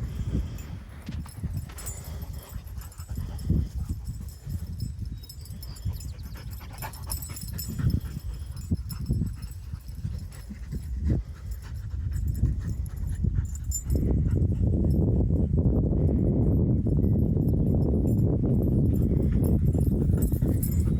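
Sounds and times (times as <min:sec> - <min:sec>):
dog panting: 0:00.0 - 0:04.7, 0:05.6 - 0:14.9.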